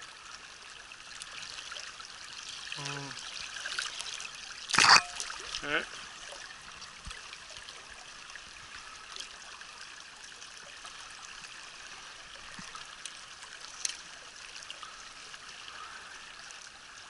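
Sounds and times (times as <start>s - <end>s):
stream rushing over rocks: 1.0s - 17.0s
faint ticks: 12.4s - 14.1s.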